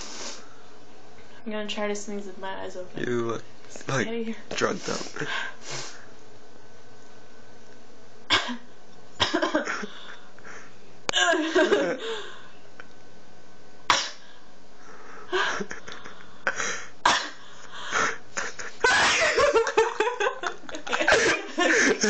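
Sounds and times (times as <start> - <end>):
woman sniffing before sneezing: 0.0 - 0.4, 4.9 - 6.0.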